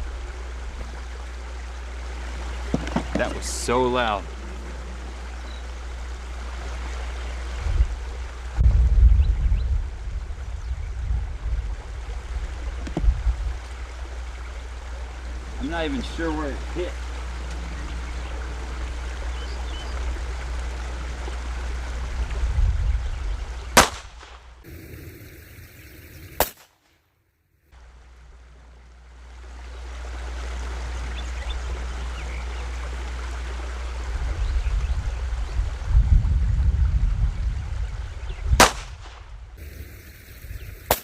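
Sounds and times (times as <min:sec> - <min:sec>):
wind rumble on microphone: 0:00.0 - 0:01.4, 0:04.2 - 0:26.4, 0:30.0 - 0:40.9
pistol shots: 0:23.8 - 0:24.4, 0:38.6 - 0:39.2.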